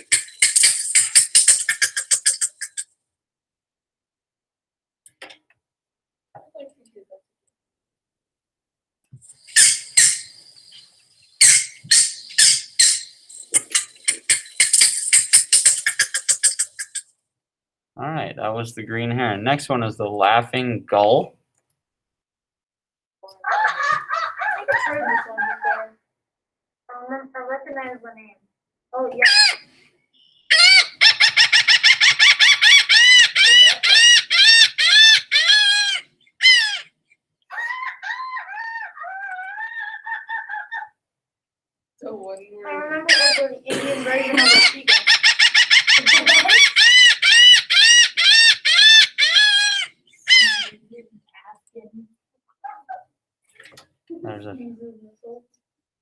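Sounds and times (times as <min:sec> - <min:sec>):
gull laughing call: 0:23.4 - 0:25.9, 0:37.5 - 0:41.0, 0:44.0 - 0:50.7
heron harsh calls: 0:29.2 - 0:29.7, 0:30.4 - 0:36.9, 0:43.1 - 0:43.5, 0:44.1 - 0:50.8
heron clucking notes: 0:30.5 - 0:36.8, 0:44.3 - 0:50.8.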